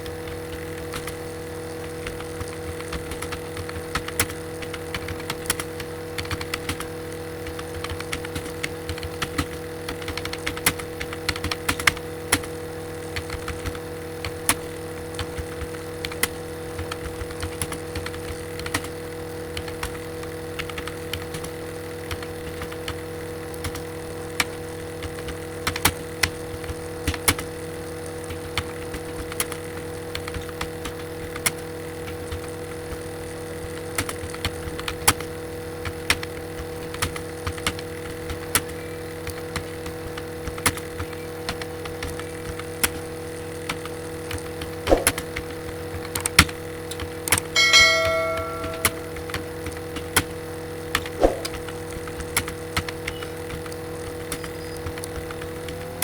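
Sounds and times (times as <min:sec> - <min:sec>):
steady hum: 0:44.9 - 0:45.4.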